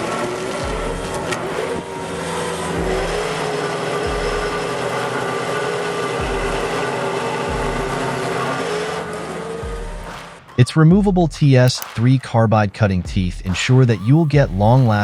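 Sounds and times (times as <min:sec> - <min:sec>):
low thumps: 0:00.0 - 0:08.4
heavy machine engine droning: 0:00.0 - 0:10.5.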